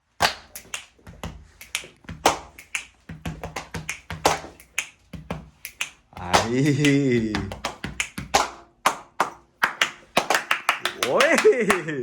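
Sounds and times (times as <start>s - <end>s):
hand claps: 0.1s - 12.0s
slaps on the body: 0.2s - 10.5s
finger snaps: 1.6s - 3.0s.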